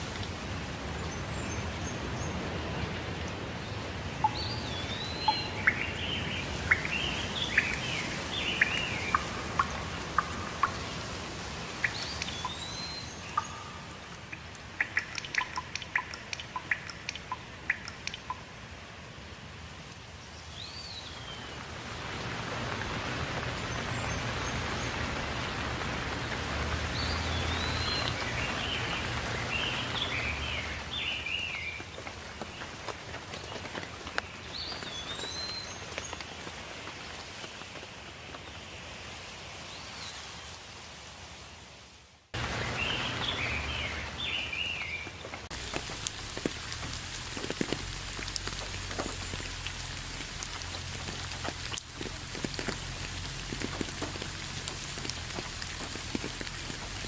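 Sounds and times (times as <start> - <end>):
steady rain: 0.0 - 57.0
birds warbling: 4.2 - 18.0
sharp ticks: 13.4 - 18.4.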